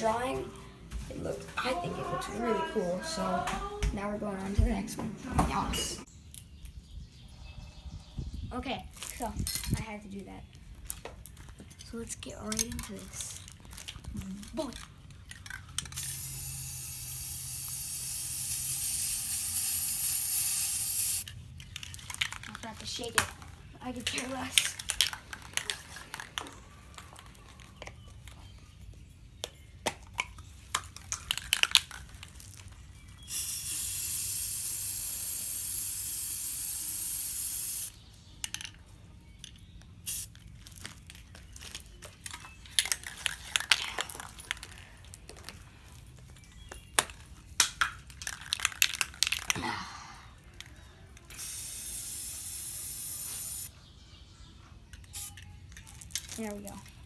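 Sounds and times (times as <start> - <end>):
spray can ball rattling: 14.6 - 23.4, 30.7 - 38.7, 40.0 - 44.8, 46.7 - 49.6, 51.3 - 53.7, 55.0 - 56.9
spray can hissing: 15.9 - 21.3, 33.2 - 38.0, 40.0 - 40.3, 51.3 - 53.7, 55.1 - 55.4.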